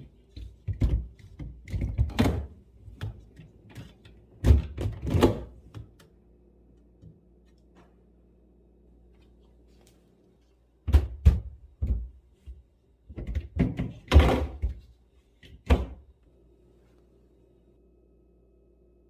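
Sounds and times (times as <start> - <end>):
knocks and thunks of objects handled: 0.5 - 5.8, 13.1 - 14.8.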